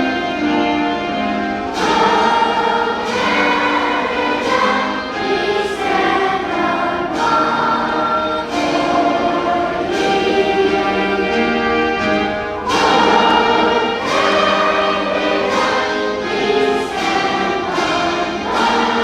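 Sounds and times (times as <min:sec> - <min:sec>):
choir singing anthem: 0:00.0 - 0:19.0
orchestral accompaniment: 0:00.0 - 0:19.0.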